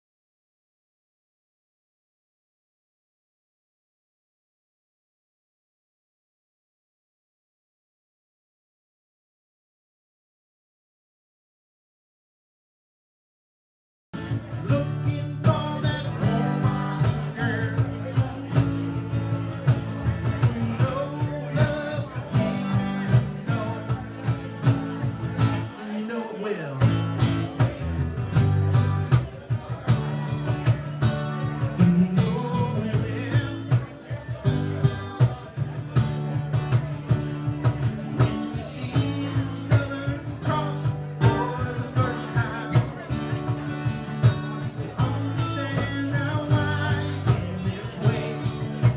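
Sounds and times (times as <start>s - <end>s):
bass: 14.2s - 48.9s
guitar: 14.2s - 48.9s
person singing: 14.5s - 18.6s, 20.3s - 24.6s, 31.8s - 35.4s, 38.2s - 43.7s, 44.7s - 48.9s
steady beat: 26.8s - 48.9s.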